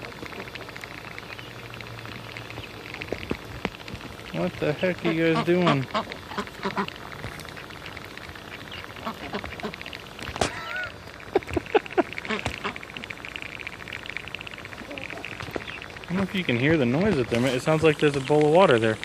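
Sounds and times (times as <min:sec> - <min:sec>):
ducks chattering bills: 0:00.0 - 0:19.0
duck calls: 0:04.8 - 0:09.8, 0:10.4 - 0:11.0, 0:12.0 - 0:13.0.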